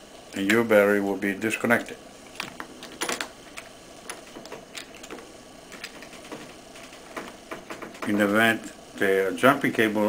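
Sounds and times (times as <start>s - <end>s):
faint clicks and rattles: 2.4s - 8.2s.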